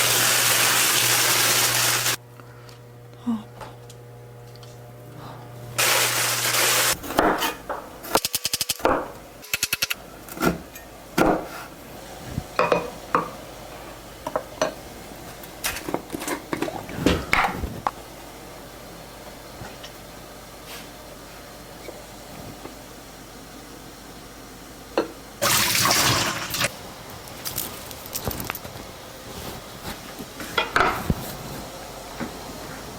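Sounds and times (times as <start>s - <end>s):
loud hiss: 0.0s - 2.2s, 5.8s - 7.0s.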